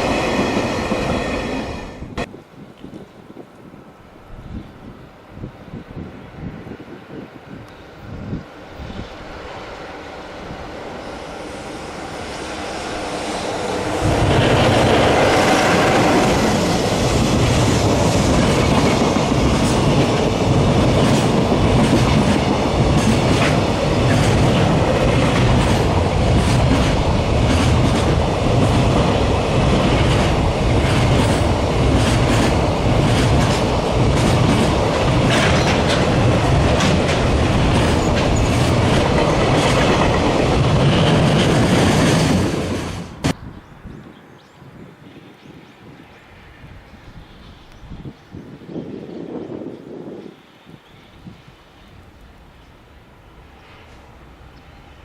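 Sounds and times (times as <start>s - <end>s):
freight train passing: 0.0s - 55.0s
wheels clacking over rail joints: 14.0s - 43.4s.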